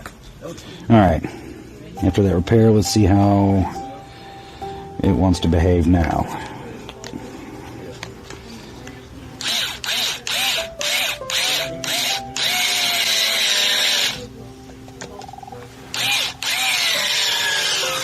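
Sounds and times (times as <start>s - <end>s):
power drill whining: 9.4s - 14.3s, 15.9s - 18.0s.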